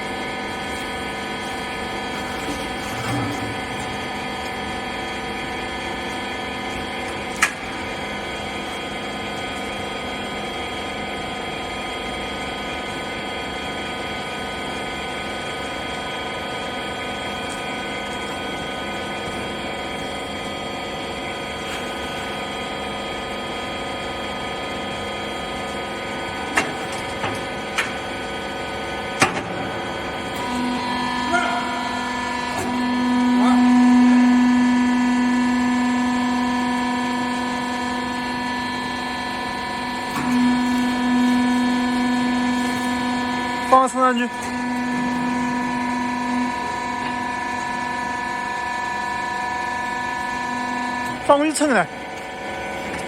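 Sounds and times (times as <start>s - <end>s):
baler pump motor humming: 0.0s - 53.0s.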